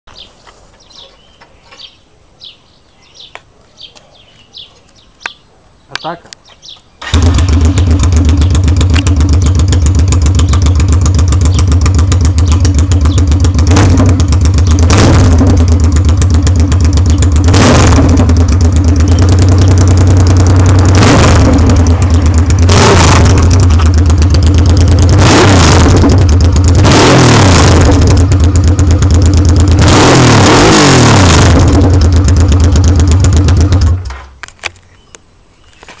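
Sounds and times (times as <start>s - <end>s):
motorcycle engine revving: 7.0s - 34.3s.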